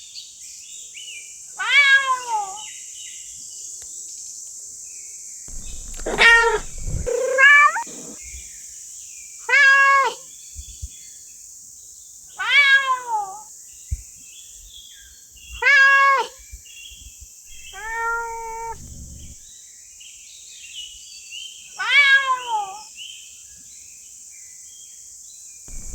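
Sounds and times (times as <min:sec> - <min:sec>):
cat meowing: 0:05.5 - 0:08.2, 0:17.5 - 0:19.4, 0:21.8 - 0:22.8.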